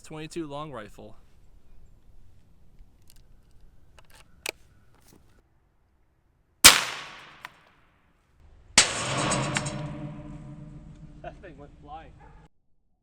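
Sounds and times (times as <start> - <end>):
loud bang: 6.7 - 7.5
rifle shot: 6.7 - 7.5.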